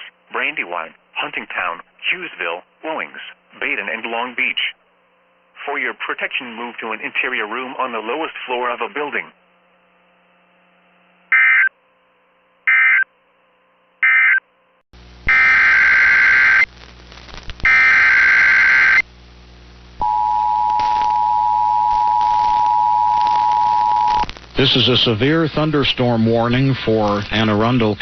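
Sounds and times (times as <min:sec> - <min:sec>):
emergency alert data bursts: 0:11.3 - 0:11.7, 0:12.7 - 0:13.1, 0:14.0 - 0:14.4, 0:15.3 - 0:16.7, 0:17.6 - 0:19.0, 0:20.0 - 0:24.3.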